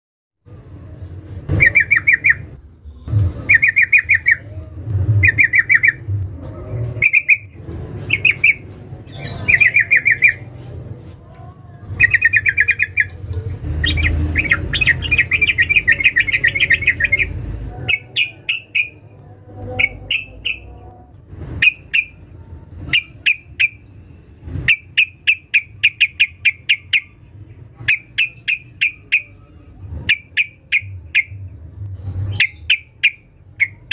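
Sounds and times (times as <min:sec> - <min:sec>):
bird sharp chirps: 0:01.5 - 0:02.6, 0:03.4 - 0:06.1, 0:07.0 - 0:10.5, 0:12.0 - 0:19.0, 0:21.6 - 0:24.0, 0:27.8 - 0:31.4, 0:32.1 - 0:33.9.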